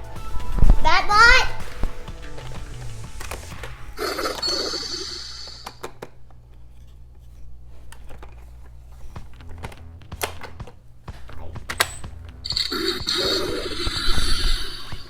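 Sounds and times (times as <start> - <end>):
plastic toys clicking and knocking: 4.1 - 6.4, 7.9 - 15.0.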